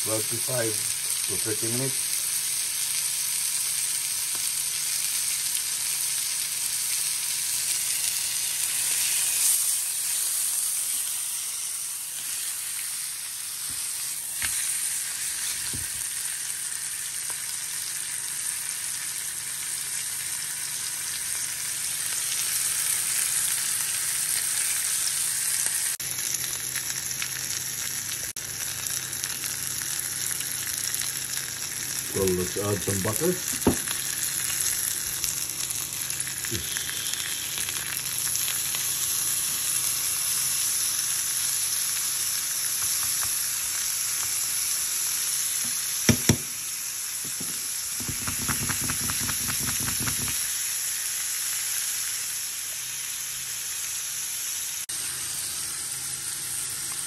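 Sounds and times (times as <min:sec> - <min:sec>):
meat sizzling in frying pan: 0:00.0 - 0:57.0.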